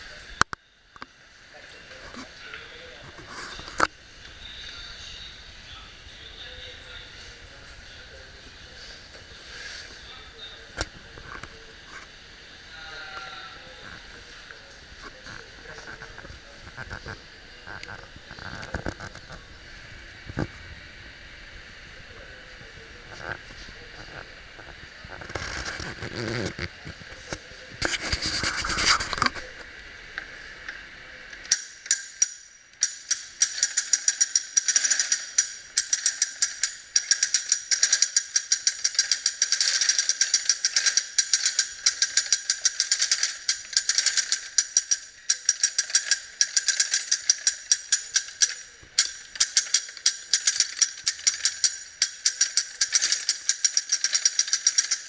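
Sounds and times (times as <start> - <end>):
braiding machine clicking and rattling: 13.2 - 20.5, 31.4 - 55.0.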